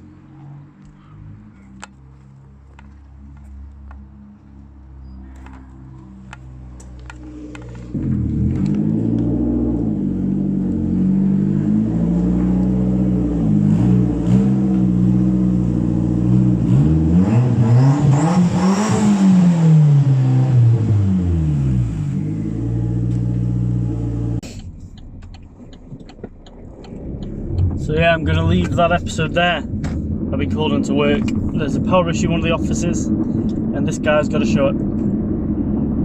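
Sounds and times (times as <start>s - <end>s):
car engine revving: 6.7s - 24.6s, 25.3s - 36.0s.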